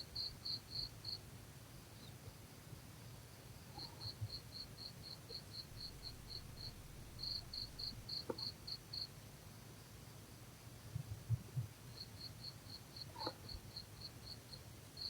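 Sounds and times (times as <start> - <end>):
insect chirping: 3.8 - 9.1.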